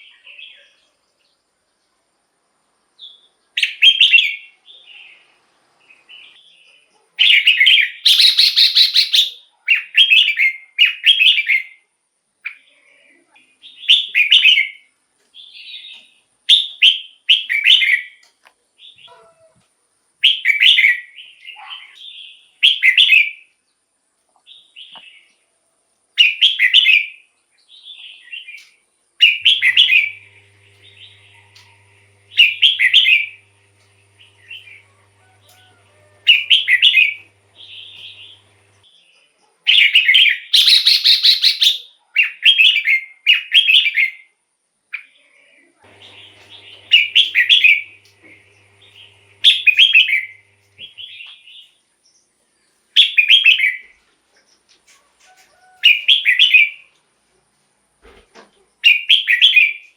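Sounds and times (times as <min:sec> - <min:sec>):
bird singing warbled phrases: 0:07.2 - 0:11.7, 0:27.8 - 0:39.0, 0:39.7 - 0:44.2, 0:46.0 - 0:51.8.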